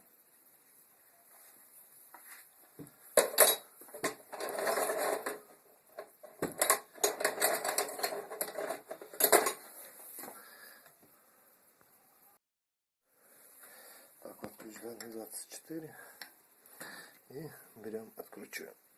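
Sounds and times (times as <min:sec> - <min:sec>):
metal hand tools clinking: 0:03.2 - 0:09.7.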